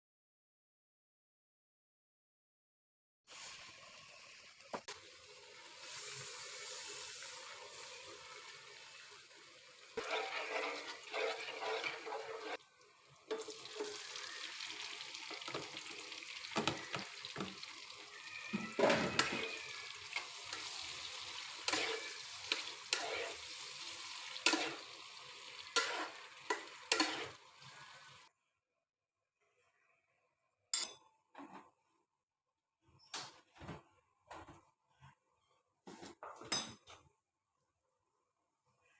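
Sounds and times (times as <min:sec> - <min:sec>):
food sizzling in frying pan: 0:03.3 - 0:28.3
utensil scraping and knocking pan: 0:10.0 - 0:12.6.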